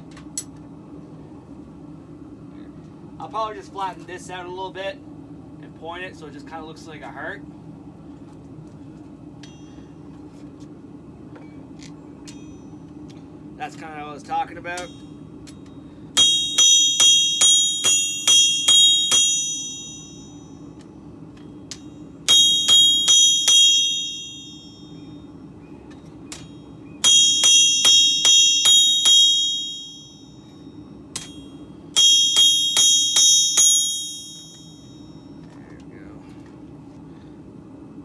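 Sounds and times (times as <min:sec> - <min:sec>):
steady low hum: 0:00.0 - 0:38.0
hammer striking steel on anvil: 0:09.4 - 0:09.9, 0:14.7 - 0:20.6, 0:21.7 - 0:25.2, 0:25.9 - 0:35.2.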